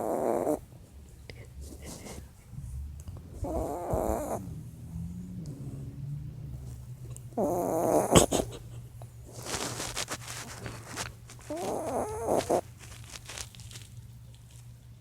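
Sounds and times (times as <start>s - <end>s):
dog snoring: 0.0s - 0.7s, 3.3s - 8.5s, 11.4s - 12.7s.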